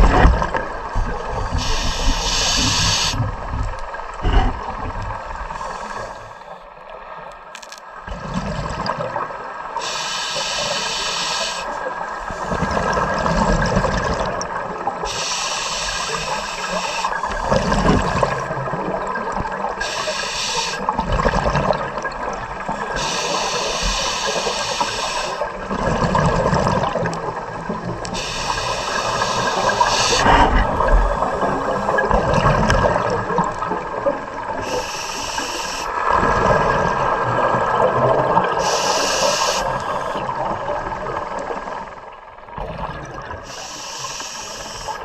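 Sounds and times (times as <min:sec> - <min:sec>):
exhaled bubbles rumbling: 0:00.0 - 0:06.0, 0:08.0 - 0:09.9, 0:11.8 - 0:20.2, 0:20.8 - 0:43.6
regulator hiss on inhale: 0:01.3 - 0:03.3, 0:05.5 - 0:06.7, 0:09.8 - 0:12.8, 0:15.1 - 0:18.4, 0:19.8 - 0:21.0, 0:22.8 - 0:25.5, 0:28.1 - 0:30.4, 0:34.6 - 0:36.4, 0:38.6 - 0:40.2, 0:43.4 - 0:45.0.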